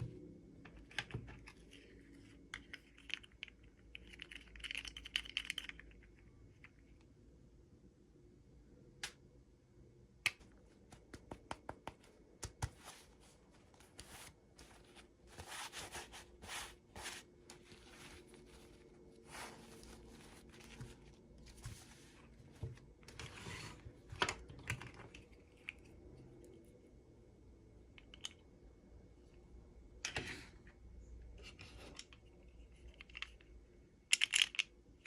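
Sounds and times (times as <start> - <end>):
packaging clicks and taps: 10.3 - 13.0.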